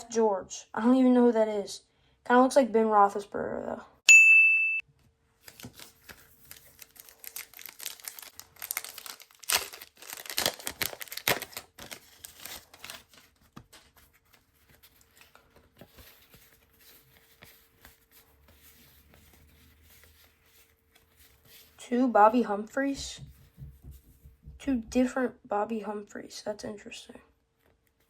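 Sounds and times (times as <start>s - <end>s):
wrapper tearing and crinkling: 5.4s - 14.0s
cards rustling: 5.4s - 21.8s.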